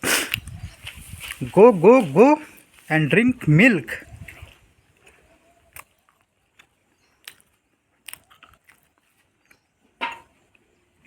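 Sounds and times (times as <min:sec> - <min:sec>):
animal feeding crunches: 0:04.0 - 0:10.8.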